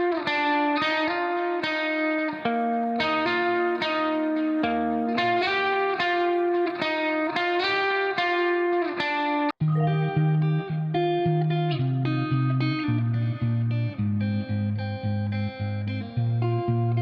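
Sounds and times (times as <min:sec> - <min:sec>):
plucked guitar music: 0:00.0 - 0:17.0.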